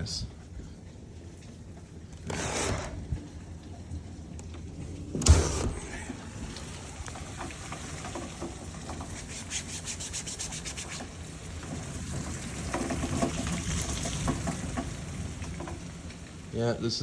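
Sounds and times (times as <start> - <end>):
rubbing scrapes: 2.2 - 3.2, 9.0 - 11.1
heavy rain: 5.9 - 17.0.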